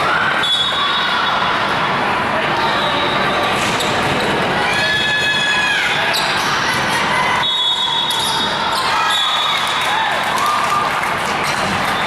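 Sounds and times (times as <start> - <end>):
spectators hubbub: 0.0 - 12.0.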